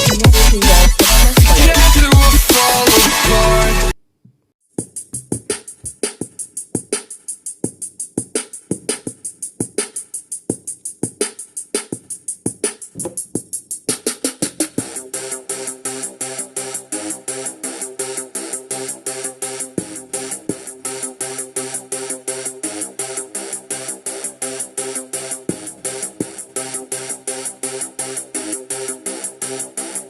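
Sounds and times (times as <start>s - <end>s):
drum-machine beat: 0.0s - 3.4s, 4.8s - 16.2s, 19.6s - 21.5s, 25.0s - 26.9s
bass-heavy electronic music: 0.0s - 4.0s, 14.4s - 30.0s.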